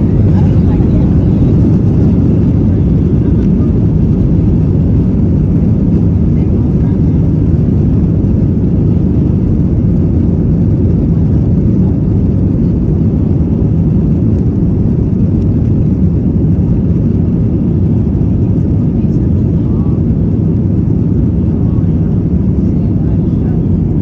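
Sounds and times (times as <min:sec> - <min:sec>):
airliner cabin drone: 0:00.0 - 0:24.0.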